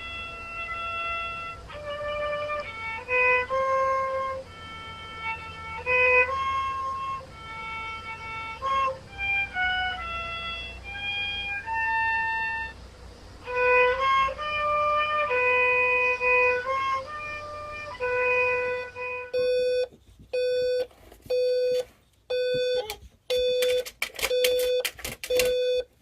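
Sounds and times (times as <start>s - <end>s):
solo violin slow melody: 0.0s - 19.4s.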